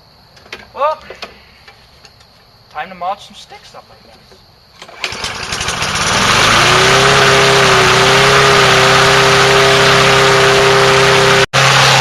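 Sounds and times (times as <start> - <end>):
lawn mower engine running: 4.8 - 12.0.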